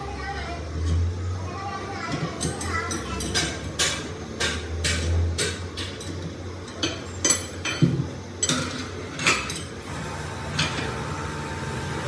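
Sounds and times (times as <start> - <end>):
metal tools clinking on metal: 2.4 - 9.8.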